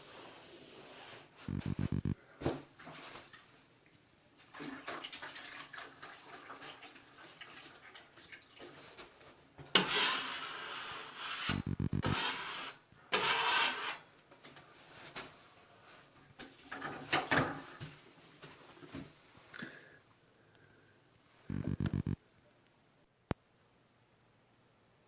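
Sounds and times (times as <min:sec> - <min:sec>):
quiet rubbing: 0:00.0 - 0:02.3
water splashing and running: 0:04.4 - 0:09.0.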